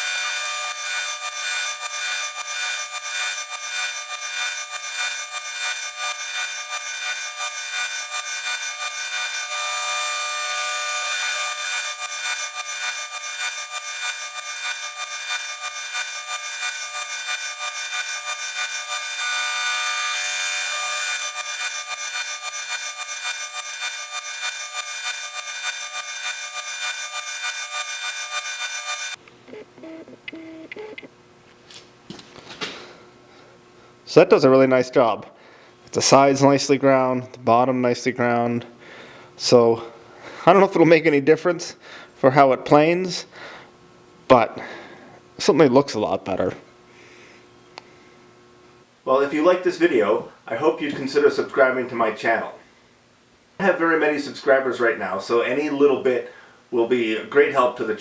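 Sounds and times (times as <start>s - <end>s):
grinder scraping metal: 0.0s - 29.2s.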